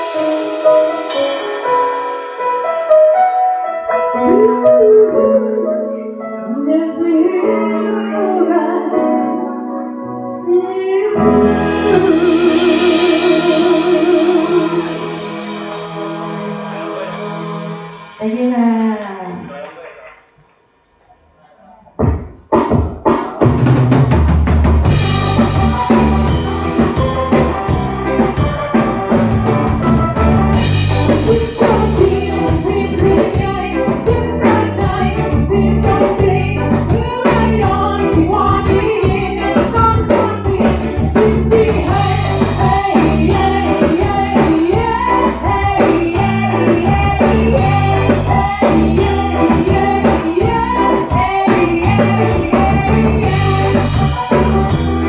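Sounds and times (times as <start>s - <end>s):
song with vocals bass and drums: 11.2s - 19.3s, 22.0s - 55.0s.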